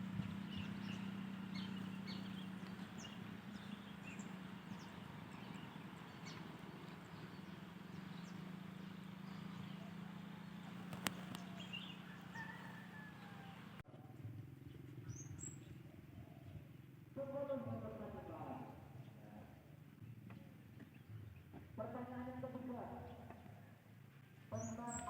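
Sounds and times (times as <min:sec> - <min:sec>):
bird chirps: 0:00.1 - 0:13.8, 0:14.6 - 0:16.9, 0:24.5 - 0:25.0
sharp click: 0:10.8 - 0:11.5.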